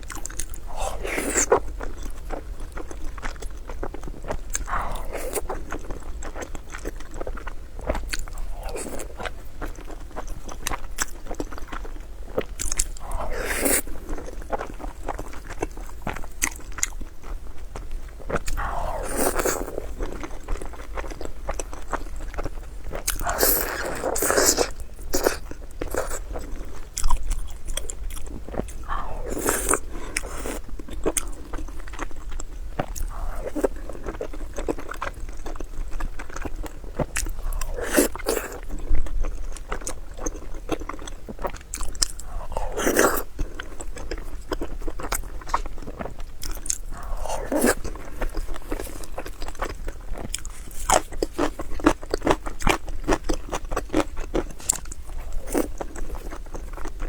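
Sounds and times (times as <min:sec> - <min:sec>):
person biting and chewing food: 0:12.4 - 0:17.0, 0:18.3 - 0:57.0.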